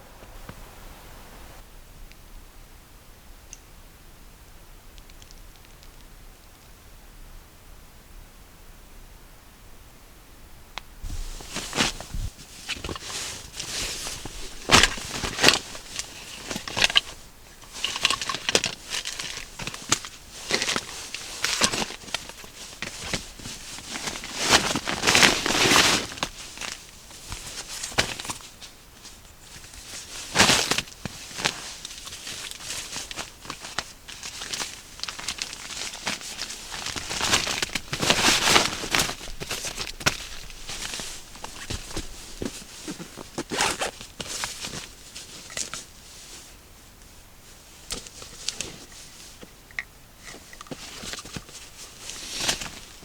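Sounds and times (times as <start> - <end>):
crinkling and rustling: 11.0 - 53.0.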